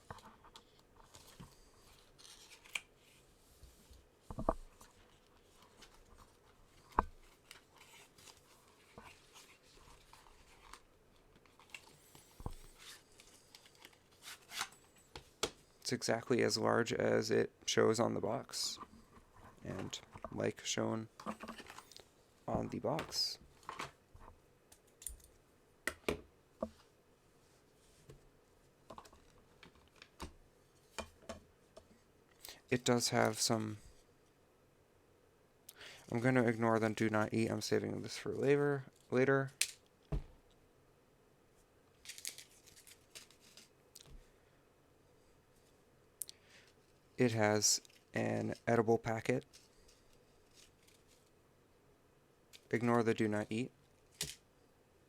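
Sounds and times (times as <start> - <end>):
cardboard packaging rustling: 42.0 - 43.7.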